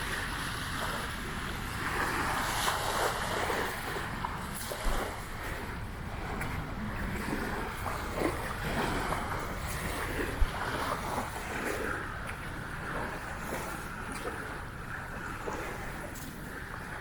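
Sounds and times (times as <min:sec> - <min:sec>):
small waves lapping at shore: 0:00.0 - 0:17.0
wind rumbling on microphone: 0:00.0 - 0:17.0.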